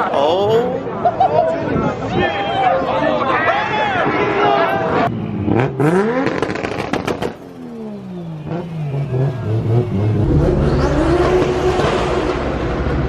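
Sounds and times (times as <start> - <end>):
car engine revving: 5.1 - 13.0.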